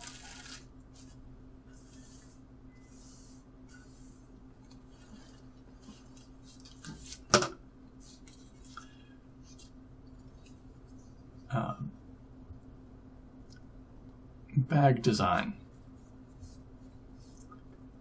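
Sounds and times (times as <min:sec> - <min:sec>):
plastic bag rustling: 0:00.0 - 0:01.2
low electrical hum: 0:00.0 - 0:18.0.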